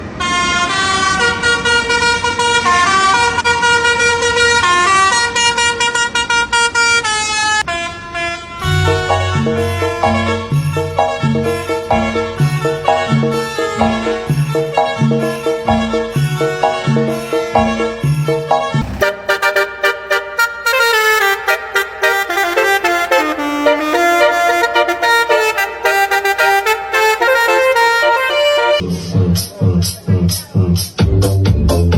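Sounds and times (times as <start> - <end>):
musical truck horn: 0.1 - 28.8
low rumble: 18.6 - 19.8.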